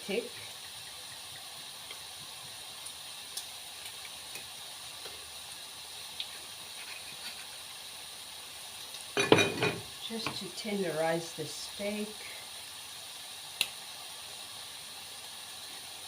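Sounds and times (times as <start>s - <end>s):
bacon sizzling in a pan: 0.0s - 16.0s.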